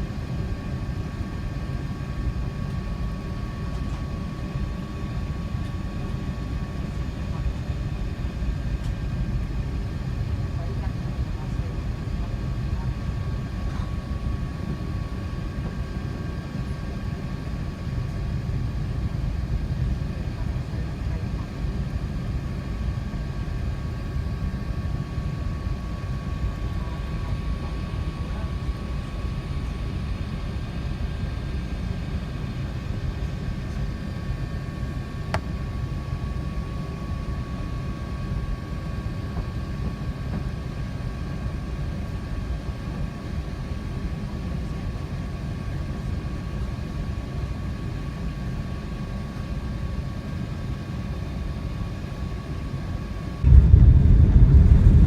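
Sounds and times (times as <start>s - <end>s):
aircraft cabin engine rumble: 0.0s - 55.0s
faint steady whine: 49.1s - 55.0s.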